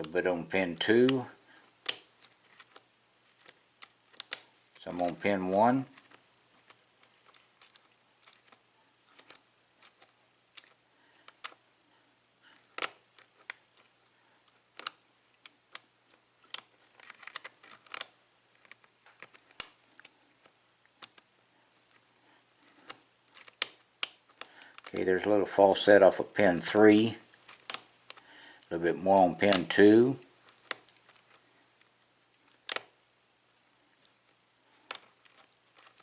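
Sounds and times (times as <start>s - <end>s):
lock pick metallic clicks and scrapes: 12.5s - 13.9s.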